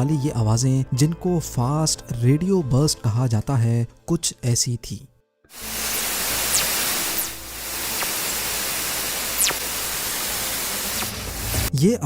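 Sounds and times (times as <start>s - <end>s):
static hiss: 5.5s - 11.7s
short falling whistles: 5.6s - 11.4s.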